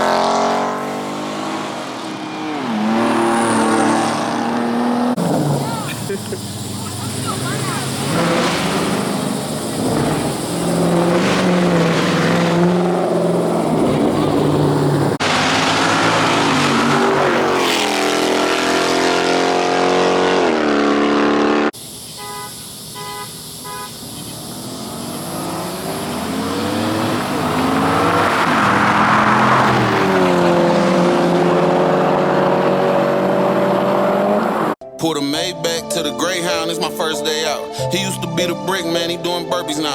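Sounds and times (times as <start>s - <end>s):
car engine revving hard: 0.0s - 22.4s, 23.0s - 34.8s
tyres spinning hiss: 5.2s - 17.8s, 21.8s - 31.1s.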